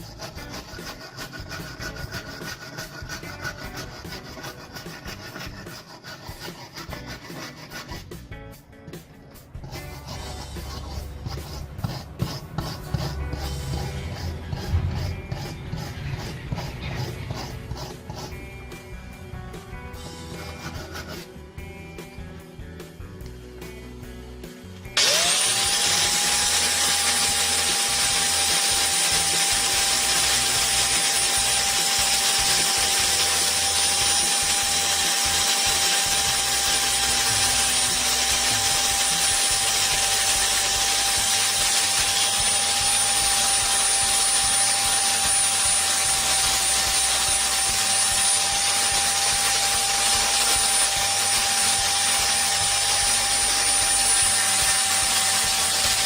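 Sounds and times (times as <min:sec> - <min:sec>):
electric power tool whining: 0:09.6 - 0:19.0, 0:24.9 - 0:56.0.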